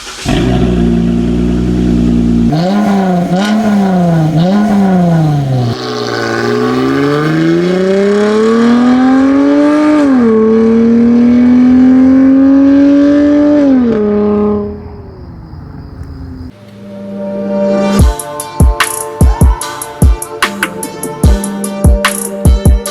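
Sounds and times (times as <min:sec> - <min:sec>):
car engine revving and accelerating: 0:00.1 - 0:15.0.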